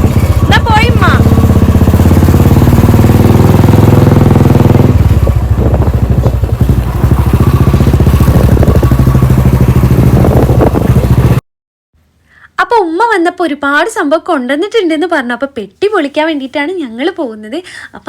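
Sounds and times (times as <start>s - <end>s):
vehicle engine running: 0.0s - 11.4s.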